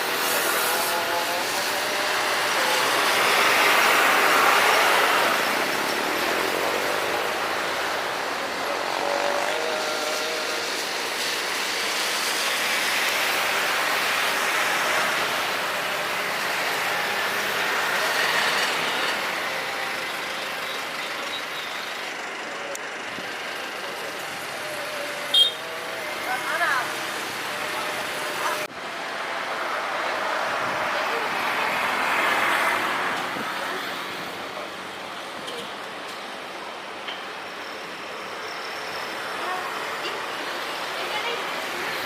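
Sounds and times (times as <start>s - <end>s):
jet engines at takeoff thrust: 0.0s - 24.6s.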